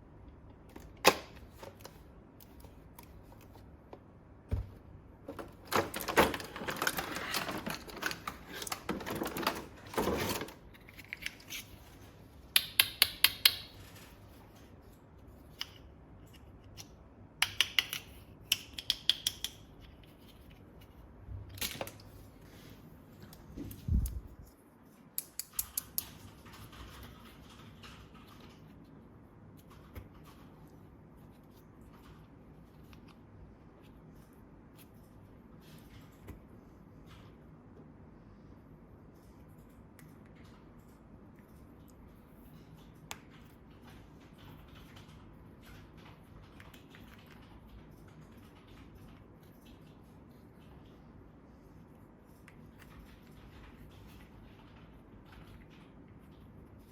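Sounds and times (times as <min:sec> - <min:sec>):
plastic packaging rustling: 0:05.2 - 0:11.6
sharp plastic clicks: 0:16.8 - 0:19.6.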